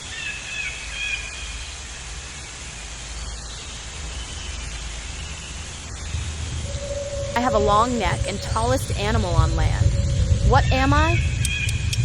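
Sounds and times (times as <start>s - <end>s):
low rumble: 5.8s - 12.0s.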